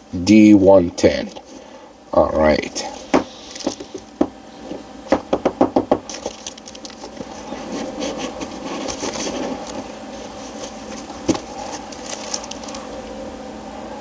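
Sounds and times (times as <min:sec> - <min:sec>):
wrapping rustling: 0:06.0 - 0:13.1.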